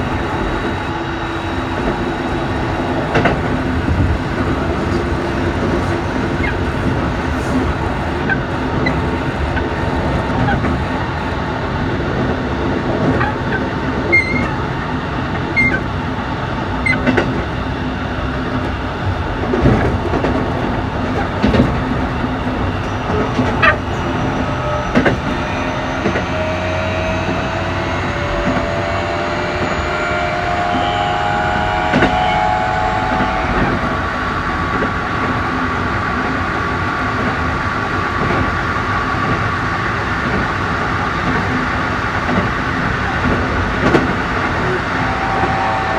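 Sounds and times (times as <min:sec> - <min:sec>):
train motors whining: 0:00.0 - 0:45.9.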